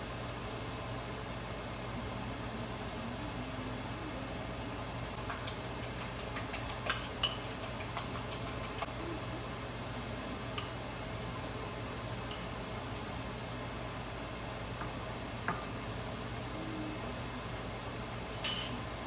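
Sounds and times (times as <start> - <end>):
steady low hum: 0.0 - 19.0
metal utensils clinking on dishes: 5.5 - 8.8, 18.3 - 18.8.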